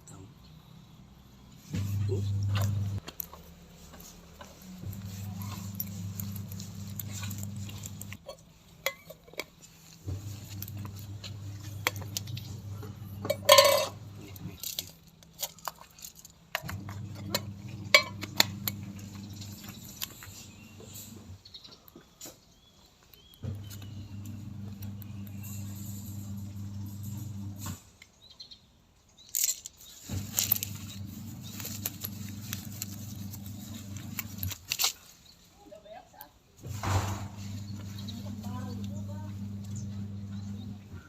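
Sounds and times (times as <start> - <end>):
low hum: 1.8 - 3.0
food clinking against bowls: 5.6 - 9.6, 10.7 - 14.3, 16.6 - 19.9
bowl clatter: 10.6 - 14.6, 16.6 - 19.8.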